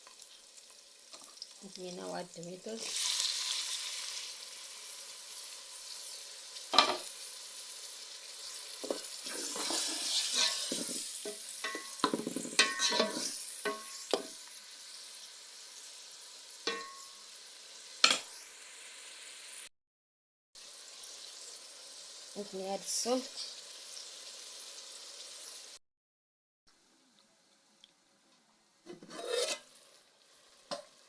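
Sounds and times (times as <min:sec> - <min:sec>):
tomatoes sizzling in hot oil: 0:00.0 - 0:19.7, 0:20.6 - 0:25.8, 0:28.8 - 0:31.0
spoon scraping and knocking pot: 0:08.8 - 0:14.4, 0:28.9 - 0:29.7.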